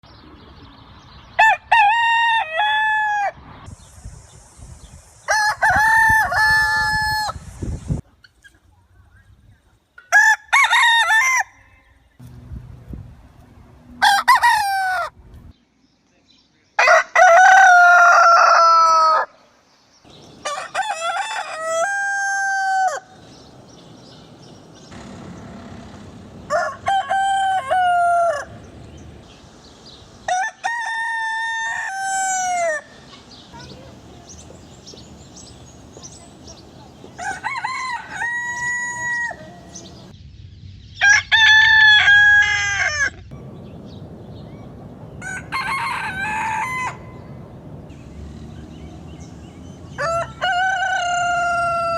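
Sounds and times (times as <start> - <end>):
rooster crowing: 10.1 - 11.8, 14.0 - 15.2, 16.8 - 19.4, 20.4 - 23.4, 24.9 - 29.0, 30.3 - 33.0, 37.1 - 40.1, 41.1 - 43.2, 45.1 - 47.6, 49.1 - 51.9.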